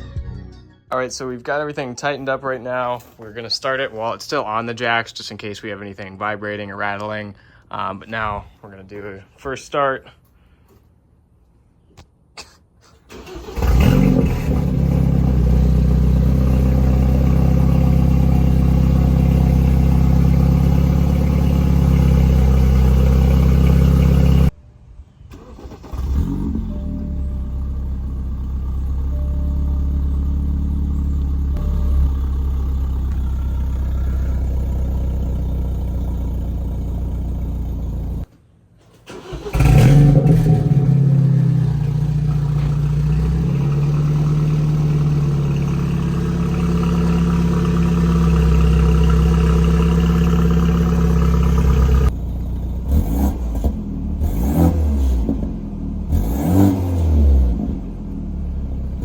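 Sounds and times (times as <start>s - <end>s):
car engine idling: 13.1s - 24.5s, 25.4s - 38.3s, 39.1s - 53.0s
engine revving: 13.1s - 24.5s, 25.7s - 38.2s, 39.1s - 59.0s.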